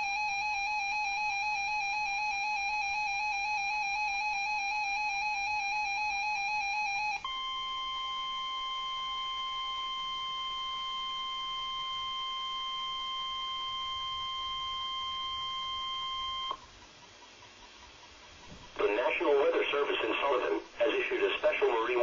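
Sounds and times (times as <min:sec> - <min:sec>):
steady alarm beep: 0:00.0 - 0:16.6
faint radio hiss: 0:07.2 - 0:22.0.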